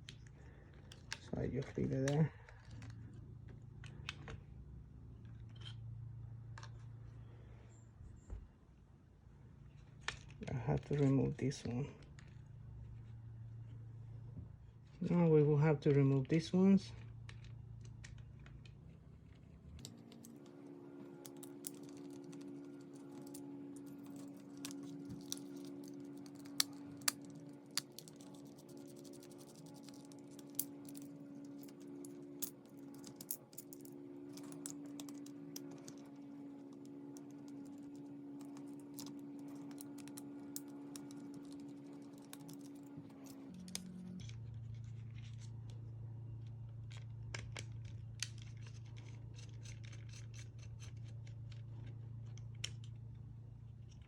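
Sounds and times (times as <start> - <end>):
faint steady hum: 0.0 - 54.0
tools and parts clicking: 21.2 - 44.4, 46.4 - 53.0.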